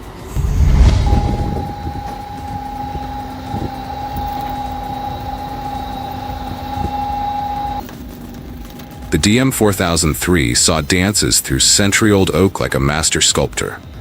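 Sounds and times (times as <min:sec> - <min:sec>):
machine whine over rumble: 0:00.3 - 0:09.2
low steady tone: 0:00.4 - 0:07.8.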